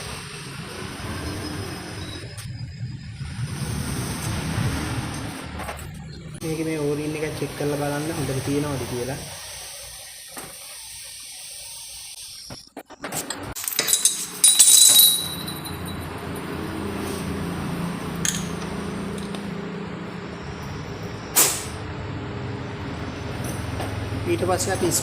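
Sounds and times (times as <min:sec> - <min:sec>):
metal tools clinking: 0:13.3 - 0:16.5, 0:18.2 - 0:19.4.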